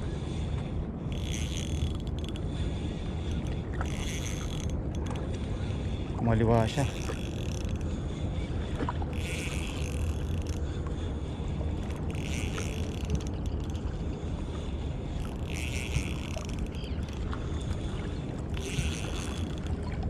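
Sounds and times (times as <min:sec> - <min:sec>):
wind and water rumble: 0:00.0 - 0:20.0
fishing reel drag buzzing: 0:01.1 - 0:02.5, 0:03.2 - 0:05.2, 0:06.6 - 0:08.0, 0:09.1 - 0:10.7, 0:11.8 - 0:13.8, 0:15.1 - 0:17.8, 0:18.4 - 0:19.8.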